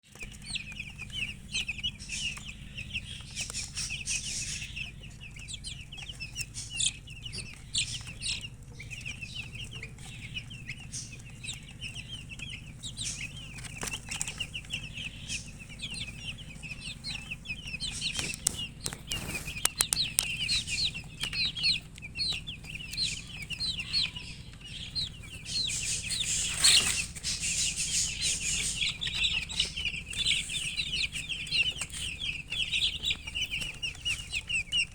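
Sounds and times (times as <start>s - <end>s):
baby chicks peeping: 0.0s - 34.9s
wing-flapping rustle: 18.0s - 20.4s.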